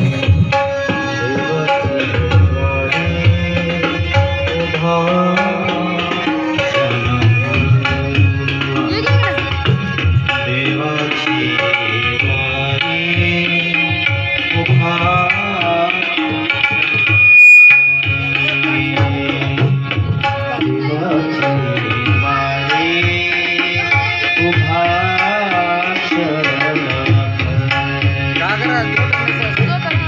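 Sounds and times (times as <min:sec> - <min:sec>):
man singing devotional song: 0:00.0 - 0:17.0, 0:18.2 - 0:30.0
tabla: 0:00.0 - 0:30.0
loud steady high tone: 0:14.6 - 0:23.5.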